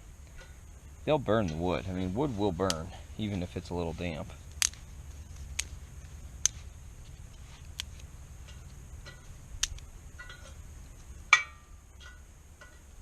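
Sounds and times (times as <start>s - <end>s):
metallic ring: 10.1s - 10.6s, 11.3s - 13.0s.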